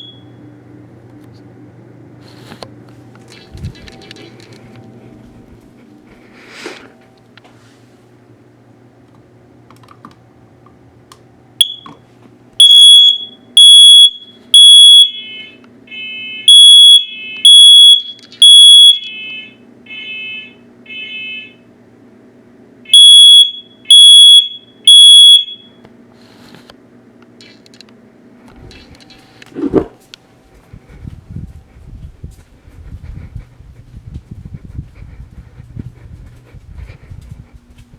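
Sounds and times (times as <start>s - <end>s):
smoke alarm chirp: 0.0s - 0.3s, 11.6s - 12.0s, 12.6s - 21.6s, 22.9s - 25.8s
steady low hum: 0.0s - 23.9s, 24.6s - 37.9s
loud high-pitched alarm beeps: 12.6s - 21.6s, 22.9s - 25.8s
quieter lower-pitched alarm beeps: 12.6s - 21.6s, 23.0s - 25.7s.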